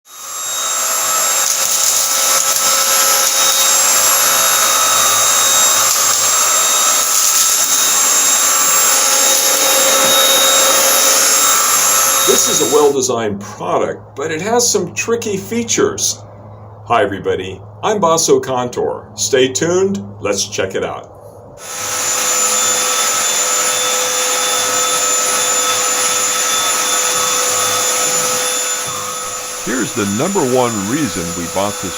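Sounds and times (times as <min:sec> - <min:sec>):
stick vacuum running: 0:00.1 - 0:13.0, 0:21.6 - 0:31.9.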